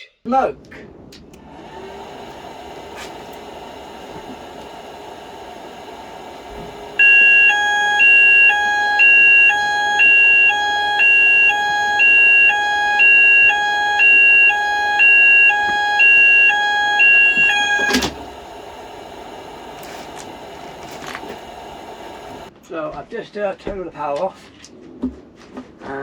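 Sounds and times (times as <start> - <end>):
steady hiss: 1.1 - 7.5, 16.0 - 22.5
steady high alarm tone: 6.6 - 19.7
low pulsing beep: 7.0 - 18.0
two-tone fire alarm: 7.0 - 18.2.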